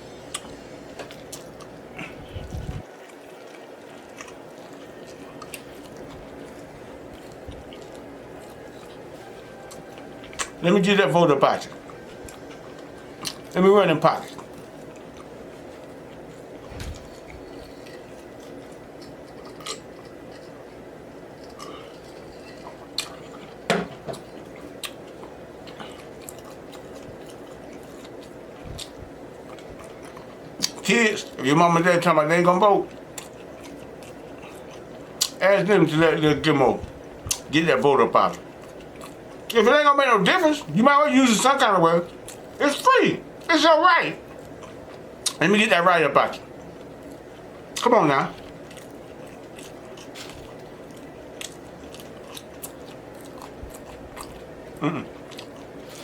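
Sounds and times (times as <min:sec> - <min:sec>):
low background hum: 0:00.0 - 0:56.0
steady low hiss: 0:00.0 - 0:56.0
chewing food: 0:00.2 - 0:31.4, 0:32.0 - 0:39.7, 0:40.3 - 0:43.5, 0:44.2 - 0:45.4, 0:46.2 - 0:56.0
wet mouth clicks eating: 0:33.2 - 0:35.4.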